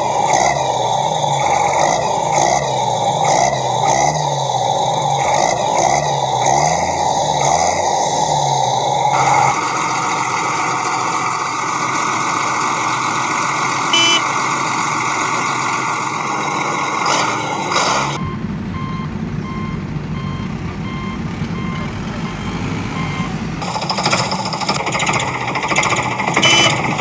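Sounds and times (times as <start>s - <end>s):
reversing alarm beeping: 9.2s - 23.6s, 26.4s - 26.8s
heavy machinery running: 9.2s - 27.0s
low engine rumble: 9.2s - 27.0s
short tone: 13.9s - 14.4s, 18.2s - 23.6s, 26.4s - 26.8s.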